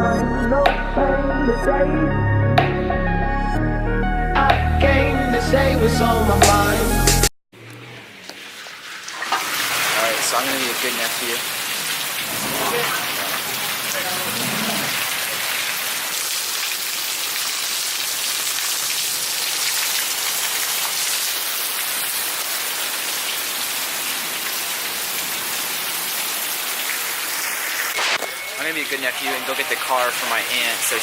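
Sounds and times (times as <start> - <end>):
heavy rain splashing: 7.6 - 31.0.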